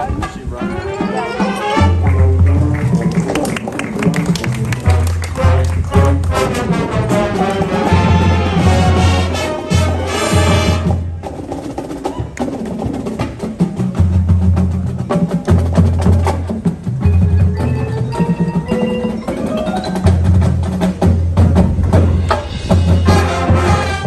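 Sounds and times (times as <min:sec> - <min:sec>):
marching band playing: 0:00.0 - 0:24.0
mallet percussion notes: 0:00.2 - 0:03.2, 0:14.9 - 0:23.6.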